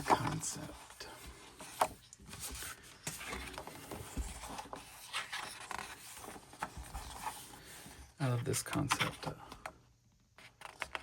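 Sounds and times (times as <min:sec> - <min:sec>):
paper pages rustling: 0:00.0 - 0:08.0.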